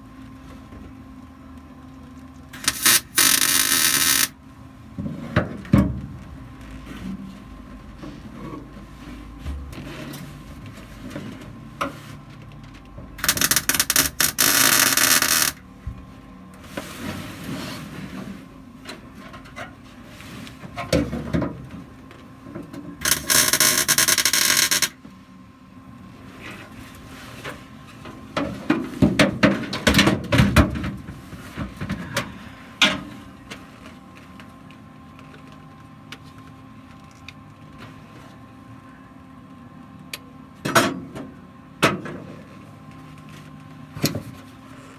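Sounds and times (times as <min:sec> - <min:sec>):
welding arc crackle: 0:02.6 - 0:04.3, 0:13.2 - 0:15.6, 0:23.0 - 0:24.9.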